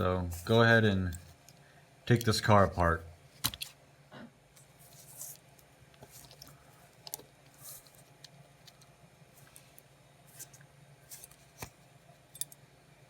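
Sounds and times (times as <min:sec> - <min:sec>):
low steady hum: 0:00.0 - 0:13.0
small parts clicking and scraping: 0:12.3 - 0:12.6.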